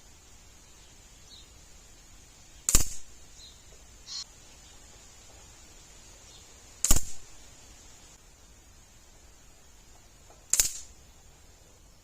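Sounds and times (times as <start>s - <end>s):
faint steady hiss: 0.0s - 12.0s
faint high chirp: 3.4s - 4.8s.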